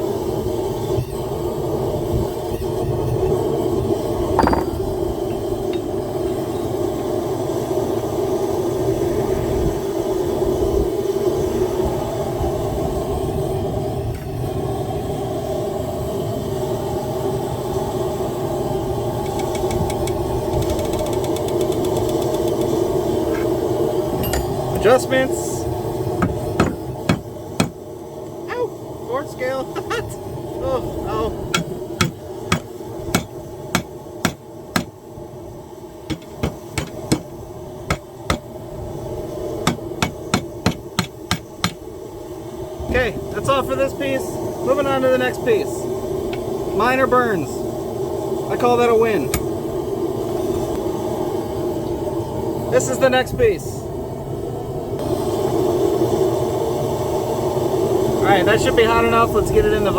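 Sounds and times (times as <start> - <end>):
steady hum: 0.0 - 59.9
hammer striking hot steel on anvil: 4.4 - 5.0, 24.2 - 24.9, 26.2 - 27.8, 31.5 - 34.9, 36.1 - 37.3, 39.6 - 41.8.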